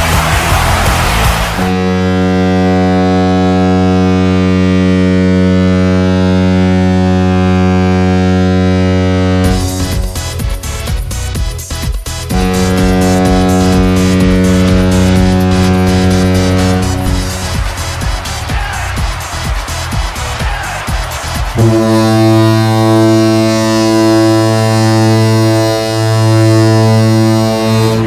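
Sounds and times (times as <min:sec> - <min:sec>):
music: 0:00.0 - 0:28.0
low goal horn blast: 0:00.1 - 0:28.0
song with electronic beat: 0:09.4 - 0:28.0.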